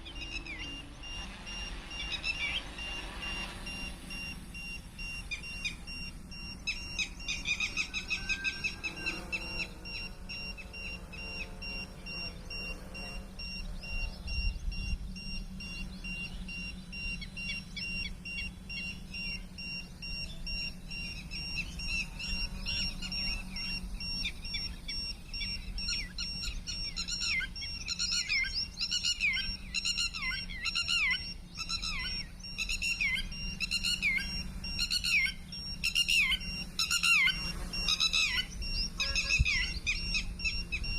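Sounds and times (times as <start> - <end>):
birds chirping: 0.0 - 40.9.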